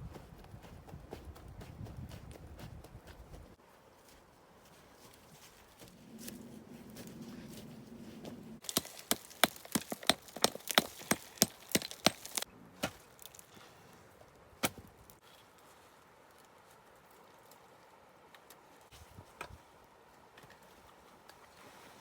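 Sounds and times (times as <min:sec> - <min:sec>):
blade chopping wood: 0:08.6 - 0:13.0.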